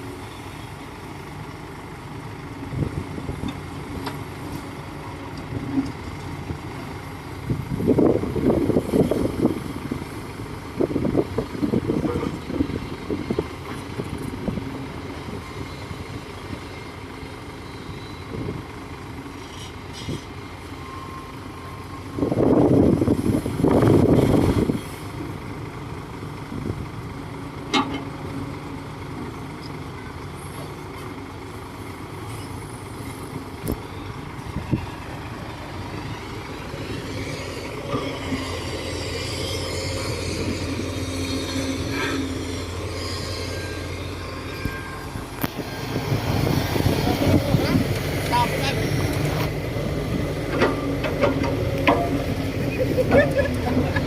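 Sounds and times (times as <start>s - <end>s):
bulldozer engine running: 0.0s - 54.0s
metallic track squeal: 35.8s - 47.7s.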